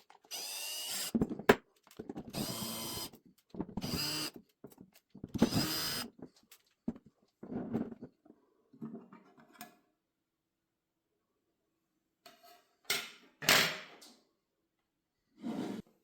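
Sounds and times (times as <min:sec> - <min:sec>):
small hard parts clattering: 0:01.1 - 0:08.2.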